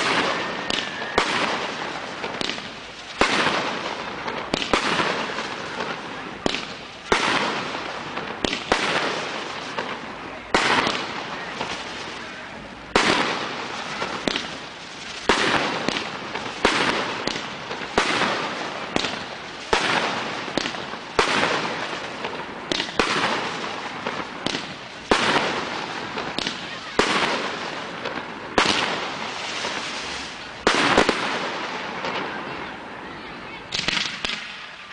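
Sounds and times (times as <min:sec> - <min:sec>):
crackling hissing firework tails: 0:00.0 - 0:34.9.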